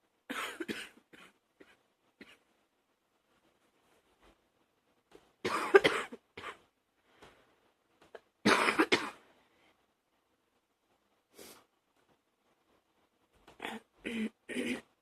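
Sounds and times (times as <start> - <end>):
woman coughing: 0.3 - 2.4, 5.5 - 6.6, 8.5 - 9.2, 13.6 - 14.9
faint breaths: 6.9 - 8.2, 9.2 - 10.2, 11.2 - 14.4.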